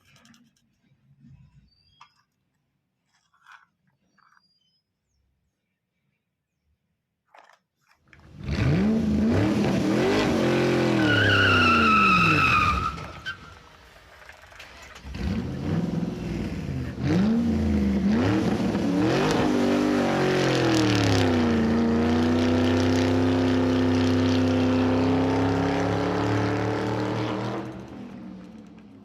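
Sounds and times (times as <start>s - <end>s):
vehicle engine revving: 8.2s - 13.2s, 14.7s - 29.0s.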